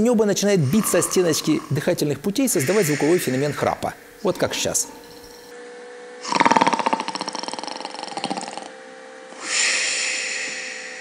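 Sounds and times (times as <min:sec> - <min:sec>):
person snoring: 0:00.4 - 0:05.1, 0:06.2 - 0:11.0.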